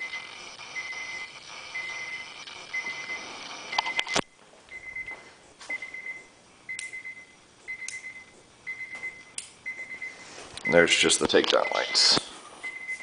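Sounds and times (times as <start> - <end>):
high electronic whine: 0.0 - 4.4
high electronic beeps: 0.0 - 11.0.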